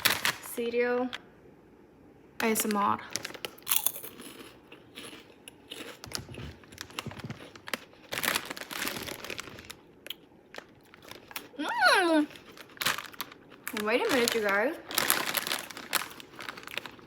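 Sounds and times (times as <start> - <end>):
snack crunching: 3.3 - 8.6.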